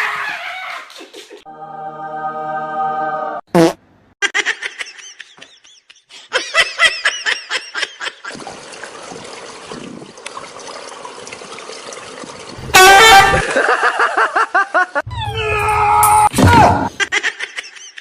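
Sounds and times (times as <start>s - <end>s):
person laughing: 4.2s - 8.4s, 13.4s - 15.1s, 16.9s - 18.0s.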